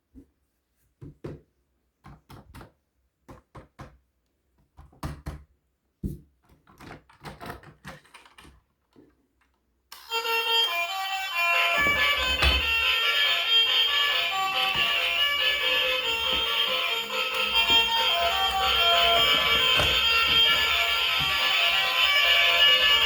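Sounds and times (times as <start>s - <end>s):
music: 9.9s - 23.0s.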